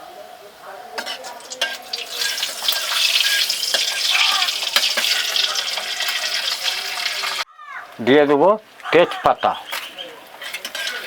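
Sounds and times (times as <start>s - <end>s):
cooking oil sizzling: 1.0s - 7.5s, 10.4s - 11.0s.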